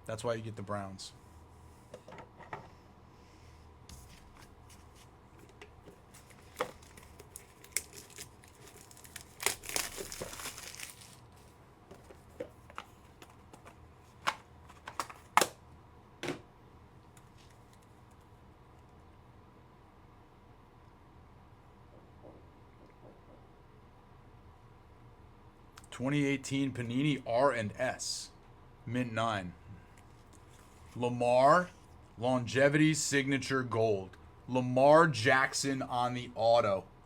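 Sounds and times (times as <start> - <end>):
packaging tearing and crinkling: 6.0 - 11.5
cards and cases clicking: 12.6 - 15.6.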